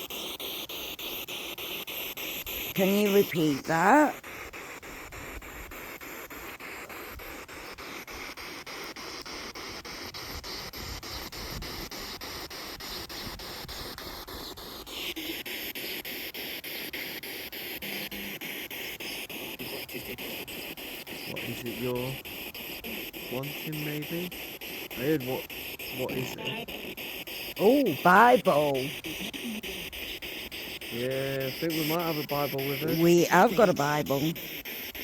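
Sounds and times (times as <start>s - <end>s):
radio static hiss: 2.8s - 4.3s, 19.2s - 35.0s.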